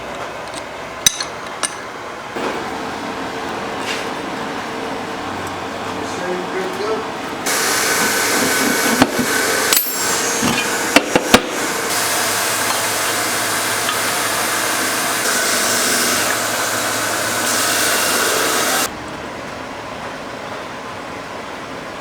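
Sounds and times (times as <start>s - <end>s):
power tool running: 7.4s - 18.9s.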